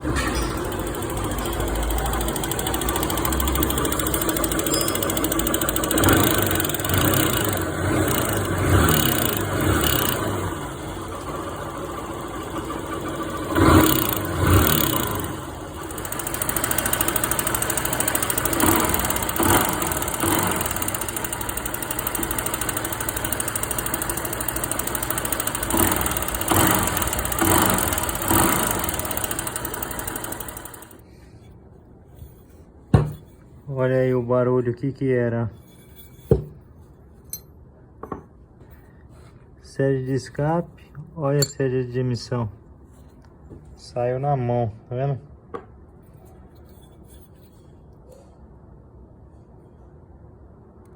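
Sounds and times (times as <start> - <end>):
engine mechanical knocking: 0.0 - 31.0
motorcycle engine revving: 0.0 - 31.0.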